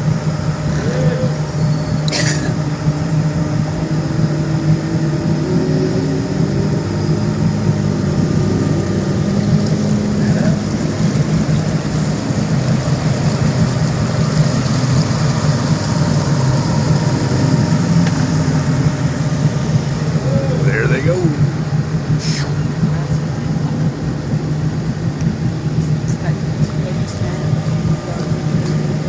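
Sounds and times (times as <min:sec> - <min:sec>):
boat engines humming: 0:00.0 - 0:29.0.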